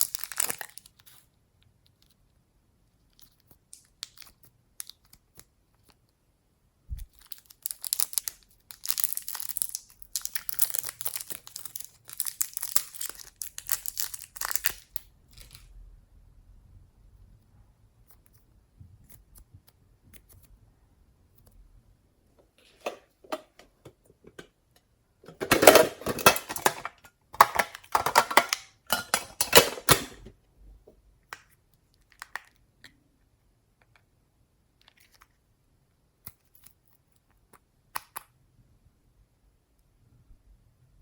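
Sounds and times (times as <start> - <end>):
slime crackling and popping: 7.0 - 15.7.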